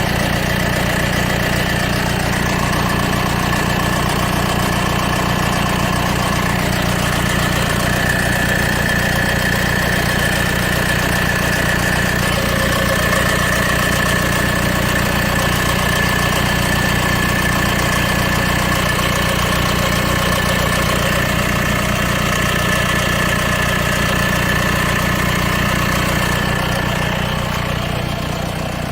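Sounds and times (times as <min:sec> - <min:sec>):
diesel engine idling: 0:00.0 - 0:28.9.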